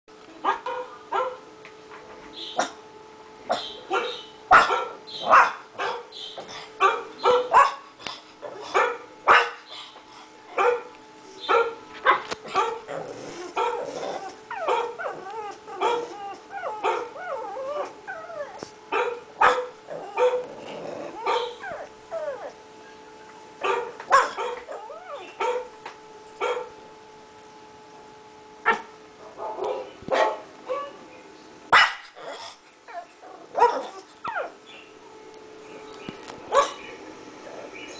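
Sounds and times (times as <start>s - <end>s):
dog barks from a video: 0.4s - 1.4s, 3.5s - 6.2s, 6.8s - 7.8s, 8.7s - 9.6s, 10.6s - 10.9s, 18.9s - 20.4s, 23.6s - 24.8s, 25.4s - 25.7s, 26.4s - 26.7s, 28.7s - 31.0s, 31.7s - 32.2s, 33.5s - 34.0s, 36.5s - 36.9s
puppy barking: 0.4s - 1.4s, 3.5s - 6.2s, 6.8s - 7.8s, 8.7s - 9.6s, 10.6s - 12.9s, 14.6s - 17.2s, 18.9s - 20.5s, 21.2s - 21.9s, 23.6s - 25.7s, 26.4s - 26.7s, 28.7s - 31.0s, 31.7s - 32.2s, 32.9s - 34.5s, 36.5s - 36.9s
puppy whimpering and yipping: 13.3s - 18.6s, 33.8s - 34.6s.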